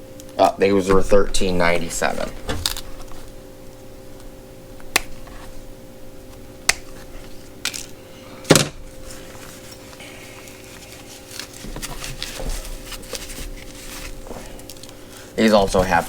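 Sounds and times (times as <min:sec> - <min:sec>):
steady low hum: 0:00.0 - 0:16.0
gloves and packaging handling: 0:01.4 - 0:16.0.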